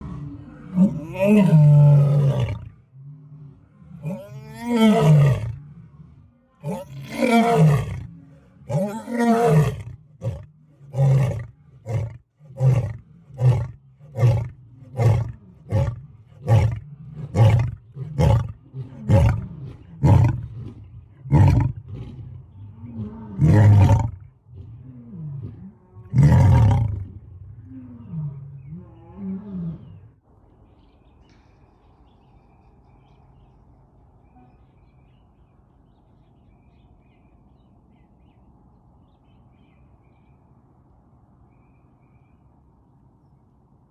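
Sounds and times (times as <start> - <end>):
lion roaring: 0.0 - 30.2.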